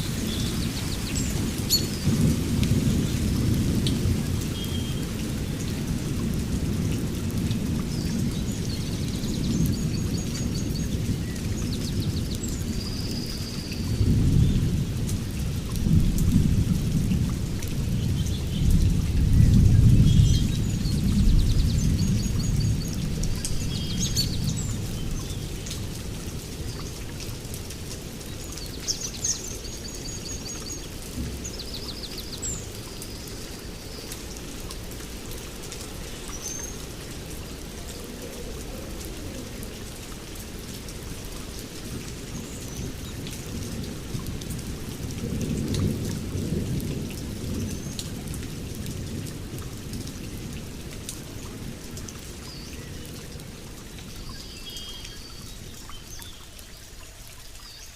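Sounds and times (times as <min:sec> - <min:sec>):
low thunder rumbling: 0:00.0 - 0:09.7, 0:13.8 - 0:25.6, 0:42.8 - 0:51.8
steady rain: 0:00.0 - 0:57.9
birds chirping and trilling: 0:00.2 - 0:02.2.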